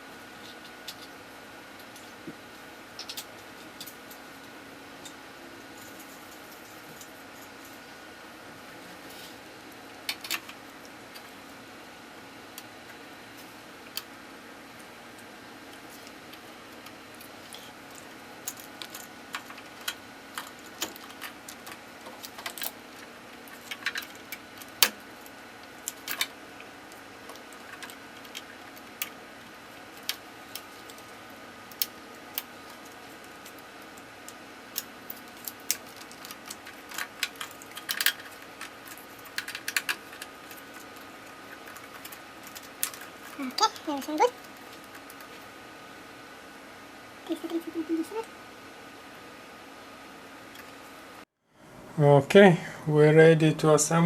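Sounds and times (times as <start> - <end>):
faint electrical hum: 0.0 - 54.0
small parts clicking and tapping: 3.0 - 4.2, 10.0 - 11.3, 15.2 - 45.4.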